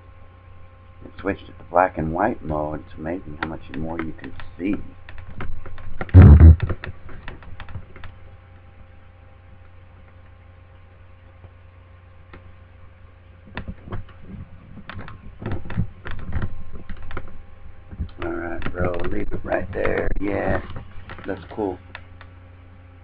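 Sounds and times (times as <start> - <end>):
faint steady hum: 0.0 - 23.0
keyboard and mouse clicking: 14.8 - 17.3.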